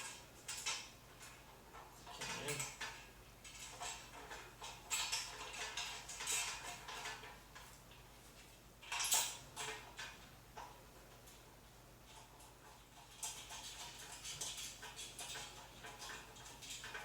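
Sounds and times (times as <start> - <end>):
metal frame parts clinking and rattling: 0.5 - 7.4.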